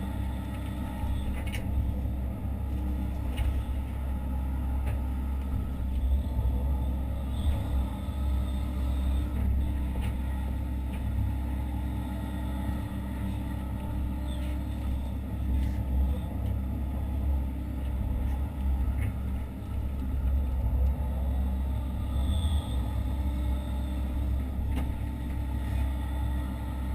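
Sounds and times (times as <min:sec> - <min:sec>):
excavator diesel engine running: 0:00.0 - 0:26.9.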